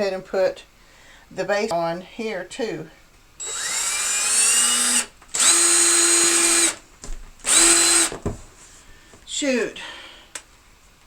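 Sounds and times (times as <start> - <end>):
power drill whining: 3.4 - 6.8, 7.4 - 8.2.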